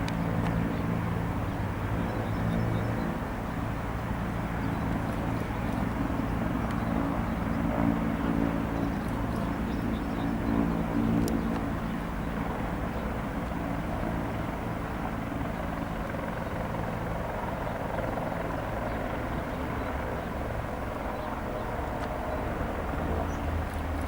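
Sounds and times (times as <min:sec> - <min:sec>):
helicopter rotor drone: 0:00.0 - 0:24.0.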